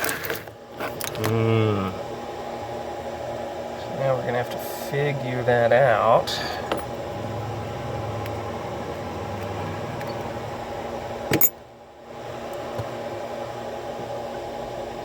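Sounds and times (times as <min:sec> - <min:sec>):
background hum and hiss: 0:00.0 - 0:15.0.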